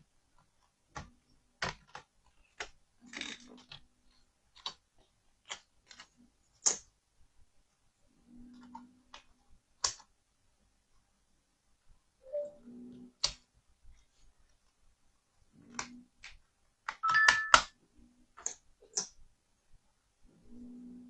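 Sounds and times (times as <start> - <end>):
clicks and taps handling a laptop: 0.4 - 2.8
short tones: 12.2 - 12.6, 17.0 - 17.7.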